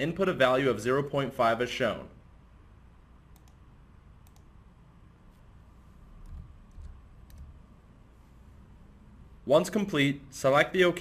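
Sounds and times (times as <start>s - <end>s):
computer mouse clicks: 3.3s - 3.6s, 4.2s - 4.5s, 6.2s - 7.6s.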